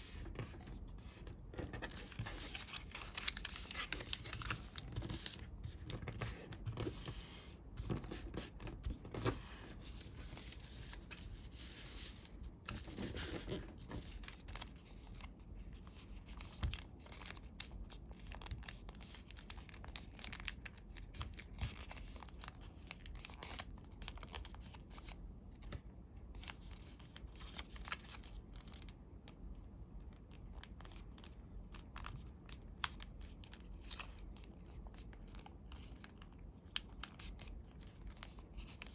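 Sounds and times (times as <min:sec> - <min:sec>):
paper rustling and crinkling: 0:00.0 - 0:29.0, 0:30.3 - 0:38.9
crisp paper creasing clicks: 0:01.7 - 0:06.7.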